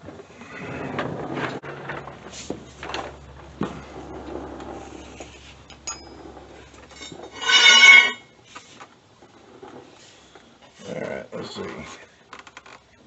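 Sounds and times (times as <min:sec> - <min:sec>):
metal scraping: 0:04.8 - 0:08.4
ringing metal clink: 0:05.9 - 0:06.2, 0:07.0 - 0:08.3.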